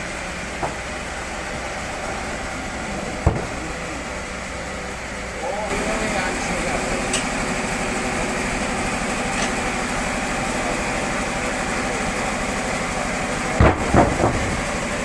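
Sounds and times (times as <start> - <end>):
sawmill machinery running: 0.0 - 15.0
heavy thumps: 0.5 - 1.8, 3.1 - 3.8, 13.6 - 14.8.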